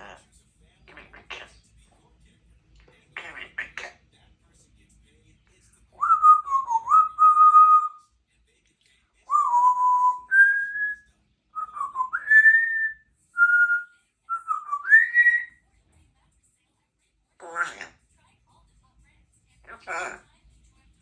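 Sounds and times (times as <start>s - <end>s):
parrot whistling: 6.0s - 8.0s, 9.3s - 11.0s, 11.6s - 15.5s.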